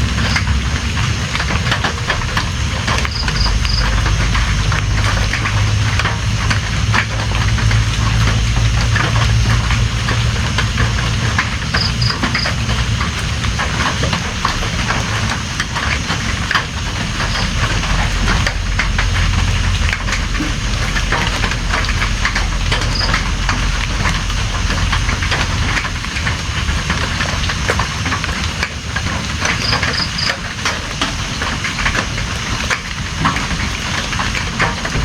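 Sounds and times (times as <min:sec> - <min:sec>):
steady rain patter: 0:00.0 - 0:35.0
low rumble: 0:17.2 - 0:26.0.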